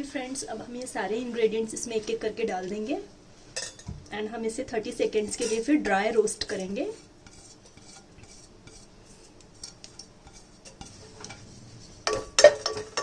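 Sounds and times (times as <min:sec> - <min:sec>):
spoon scraping in a pan: 0:06.4 - 0:13.0.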